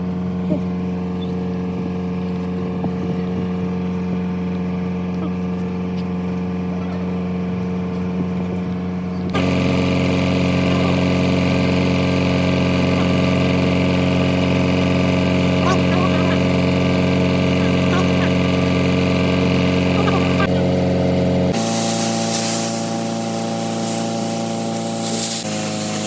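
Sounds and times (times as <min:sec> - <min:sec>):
steady machine hum: 0:00.0 - 0:26.0.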